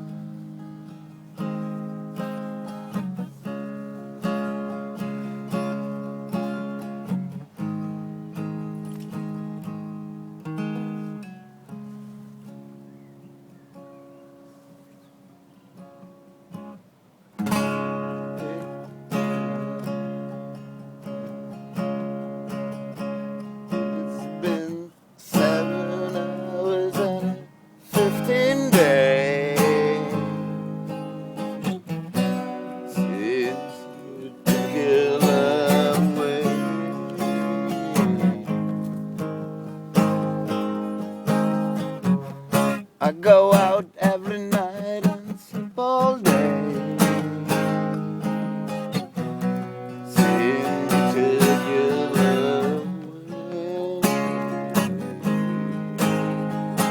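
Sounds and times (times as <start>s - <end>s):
acoustic guitar strumming chords: 0.0s - 56.9s
person singing with vibrato: 23.7s - 38.9s, 43.0s - 55.9s.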